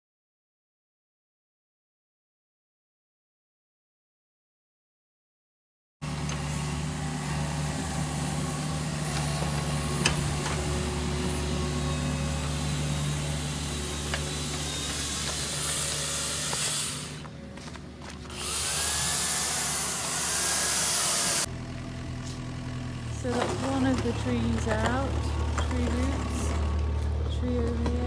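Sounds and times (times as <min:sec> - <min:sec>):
digger engine running: 0:06.0 - 0:28.0.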